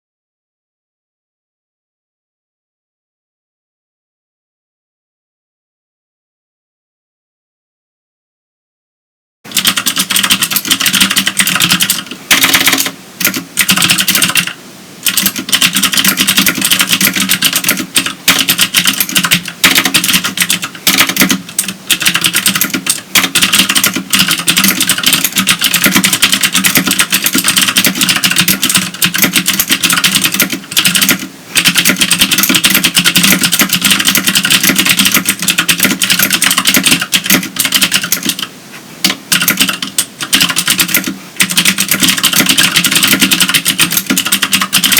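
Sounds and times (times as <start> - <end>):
fast clicky keyboard typing: 9.5 - 44.9.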